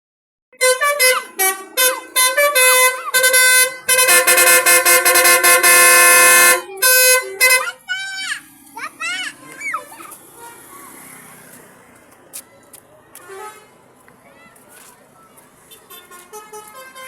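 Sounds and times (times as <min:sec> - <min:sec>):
multi-tone bus horn tune: 0:00.6 - 0:07.9, 0:10.4 - 0:10.7, 0:13.2 - 0:13.8, 0:15.7 - 0:17.0.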